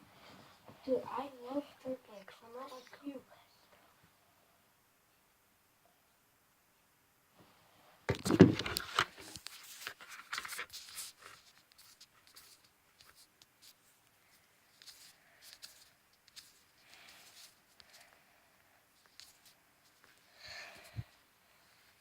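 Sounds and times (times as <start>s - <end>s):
faint rustles and clicks: 7.4s - 22.0s.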